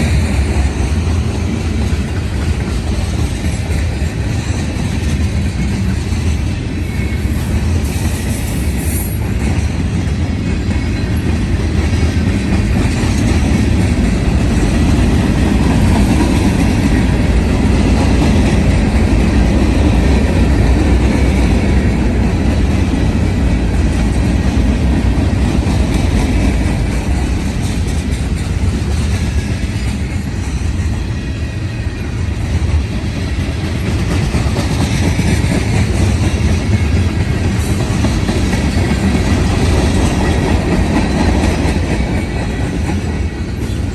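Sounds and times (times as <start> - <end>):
freight train wheels on rails: 0.0 - 43.9.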